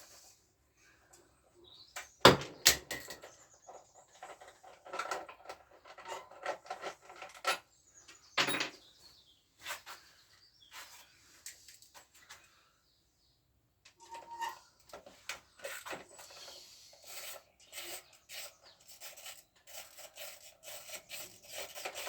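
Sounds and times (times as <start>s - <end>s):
tools and metal parts clinking: 2.3s - 7.7s, 8.4s - 8.9s.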